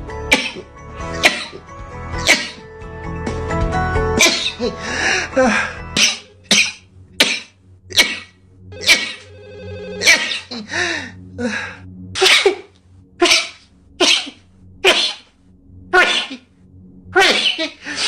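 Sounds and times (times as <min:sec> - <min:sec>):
person sneezing: 0:00.3 - 0:01.6, 0:02.2 - 0:02.6, 0:04.2 - 0:09.2, 0:10.0 - 0:15.3, 0:16.0 - 0:16.5, 0:17.2 - 0:18.0.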